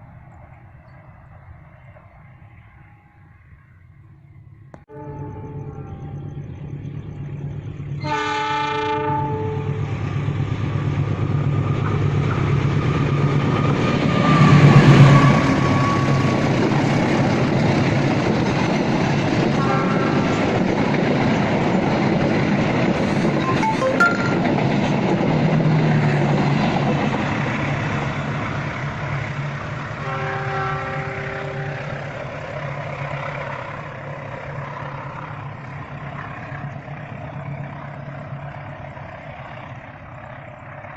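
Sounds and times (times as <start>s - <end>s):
train passing with wheel noise: 0.0s - 40.9s
train horn: 4.8s - 6.4s, 8.0s - 10.0s, 14.3s - 16.6s, 19.6s - 20.6s, 30.0s - 32.2s.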